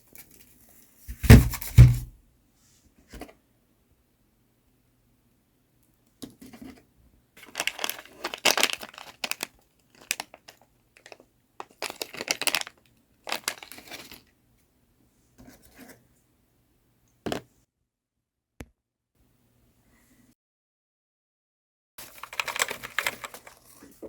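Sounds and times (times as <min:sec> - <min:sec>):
wrapping crinkling and tearing: 0:07.4 - 0:14.3, 0:22.0 - 0:23.9.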